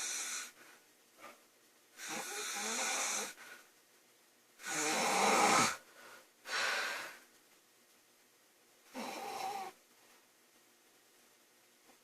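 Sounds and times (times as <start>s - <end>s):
woman snoring: 0.0s - 0.6s, 2.0s - 3.4s, 4.6s - 5.8s, 8.9s - 9.8s.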